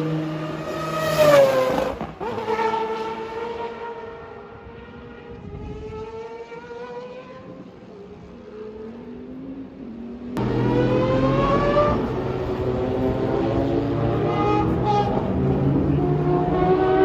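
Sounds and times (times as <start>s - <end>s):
rotary race engine revving: 10.4s - 17.0s.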